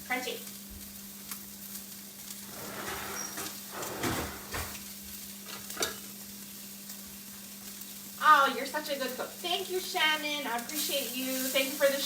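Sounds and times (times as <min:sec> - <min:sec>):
fish sizzling on a griddle: 0:00.0 - 0:03.8, 0:04.5 - 0:12.0
cooking utensil scraping and clinking: 0:02.4 - 0:04.8, 0:05.5 - 0:06.1.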